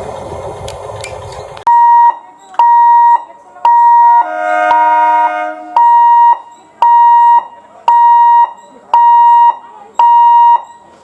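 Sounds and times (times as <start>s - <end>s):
multi-tone horn: 4.2s - 5.9s.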